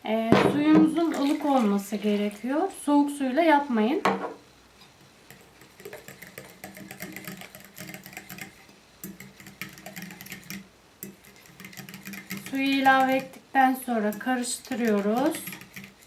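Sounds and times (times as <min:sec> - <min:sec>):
utensil clicking against a bowl: 0:05.3 - 0:13.4, 0:14.1 - 0:16.0.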